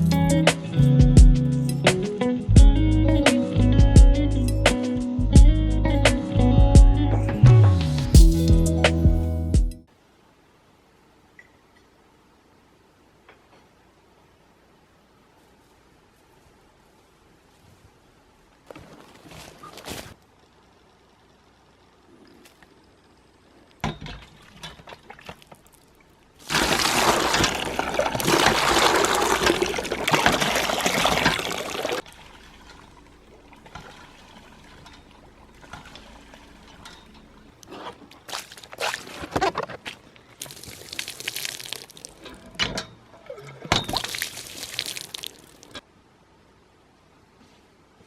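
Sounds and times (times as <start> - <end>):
liquid pouring: 26.4 - 36.9, 40.4 - 42.2, 43.8 - 45.7.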